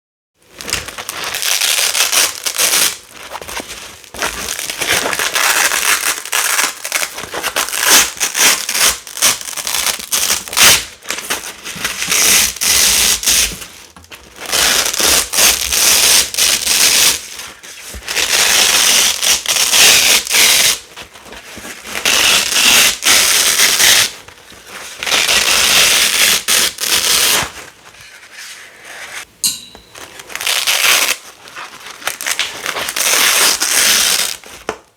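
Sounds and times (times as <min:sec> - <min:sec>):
velcro tape ripping apart: 0:01.3 - 0:03.1, 0:04.6 - 0:10.9, 0:12.0 - 0:13.6, 0:14.5 - 0:17.2, 0:18.2 - 0:20.8, 0:22.0 - 0:24.1, 0:25.0 - 0:27.5, 0:30.3 - 0:31.2, 0:32.0 - 0:34.5.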